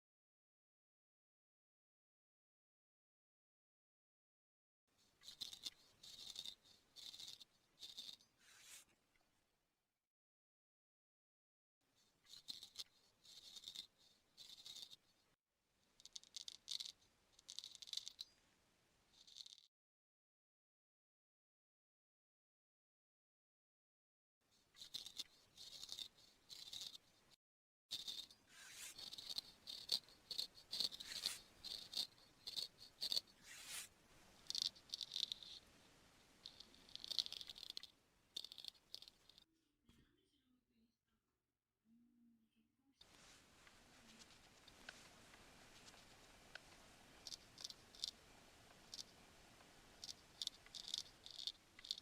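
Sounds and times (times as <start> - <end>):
grooming tool scratching in ear: 5.2 - 8.9, 12.0 - 15.2, 16.0 - 18.3, 24.7 - 27.3, 27.9 - 35.6, 36.4 - 39.4, 45.7 - 48.2, 49.9 - 52.0
ear grooming tool scraping: 24.8 - 27.3, 27.9 - 35.6.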